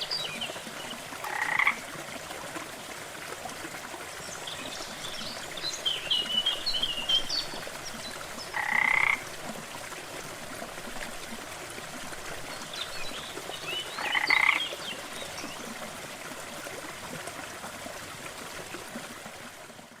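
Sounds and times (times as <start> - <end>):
small waterfall rushing: 0.0 - 20.0
frogs croaking loudly: 1.2 - 1.8, 8.5 - 9.2, 14.0 - 14.6.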